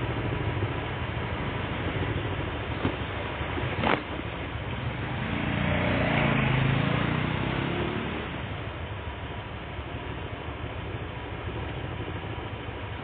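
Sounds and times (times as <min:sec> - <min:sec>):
vehicle passing: 0:05.1 - 0:08.4.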